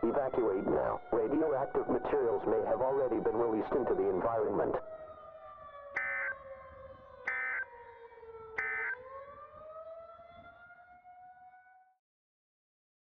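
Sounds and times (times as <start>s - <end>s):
outdoor warning siren wailing: 0.0s - 12.0s
alert data tones: 6.0s - 6.3s, 7.3s - 7.6s, 8.6s - 9.0s.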